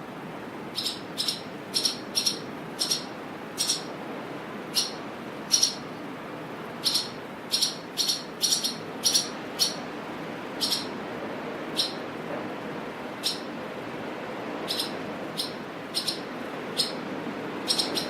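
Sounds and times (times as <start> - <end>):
swallows squawking: 0.8 - 3.9, 4.8 - 5.9, 6.8 - 9.8, 10.6 - 10.9, 11.7 - 12.0, 13.2 - 13.5, 14.7 - 17.0, 17.7 - 18.0.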